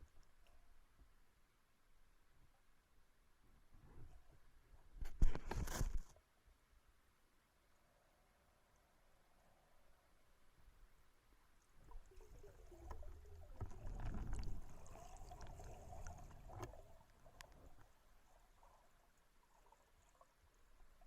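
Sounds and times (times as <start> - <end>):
water sloshing and gurgling: 11.7 - 21.0.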